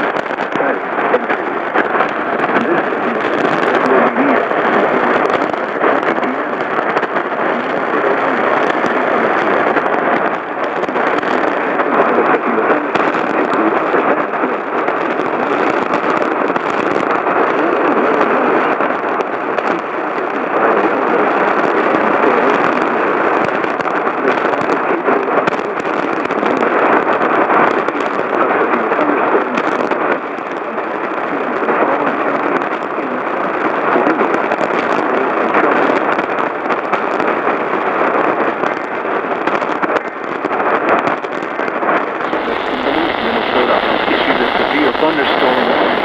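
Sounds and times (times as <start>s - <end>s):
radio static hiss: 0.0s - 46.0s.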